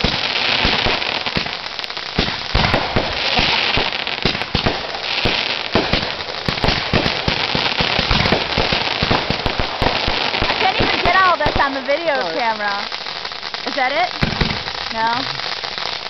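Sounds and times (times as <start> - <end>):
fireworks bangs and pops: 0.0 - 16.0
fireworks crackling: 0.0 - 16.0.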